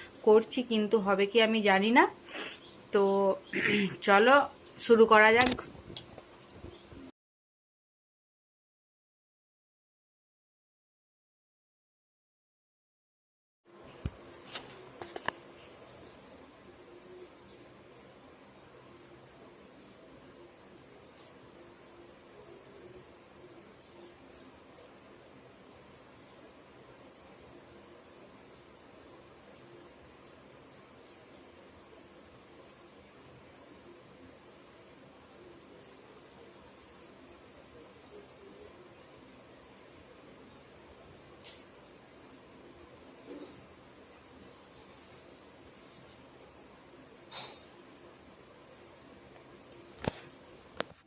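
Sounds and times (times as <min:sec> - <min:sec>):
sharp clicks: 0:05.4 - 0:06.2
low background hiss: 0:13.7 - 0:50.8.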